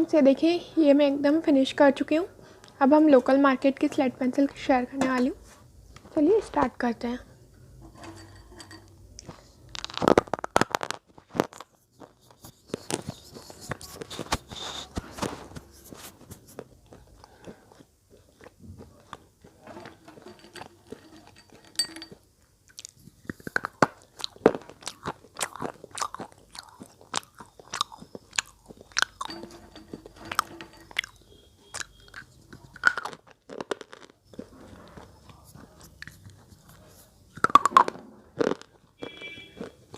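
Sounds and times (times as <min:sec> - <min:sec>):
slate pencils crunching when chewed: 0:09.2 - 0:39.9.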